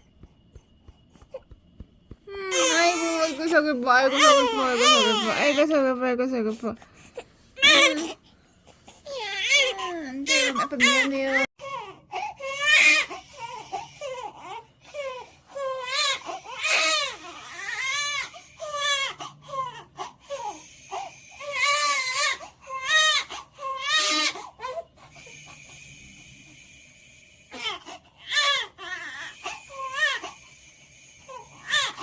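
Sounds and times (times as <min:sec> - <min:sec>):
baby crying: 0:02.3 - 0:05.9, 0:07.6 - 0:08.2, 0:09.1 - 0:11.5.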